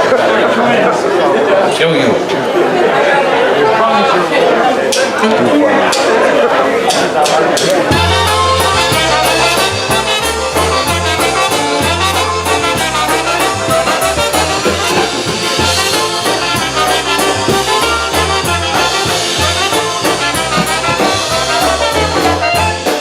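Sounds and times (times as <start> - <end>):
polka band playing: 6.9 - 23.0.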